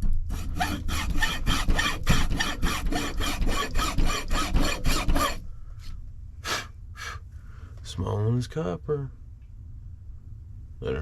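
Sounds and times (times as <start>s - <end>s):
file rasping on wire: 0.0s - 5.4s.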